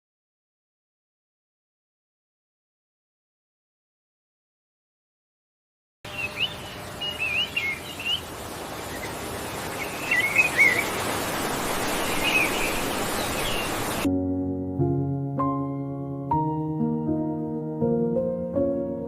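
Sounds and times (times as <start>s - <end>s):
birds chirping: 6.1s - 14.1s
outdoor ambience hiss: 6.1s - 14.1s.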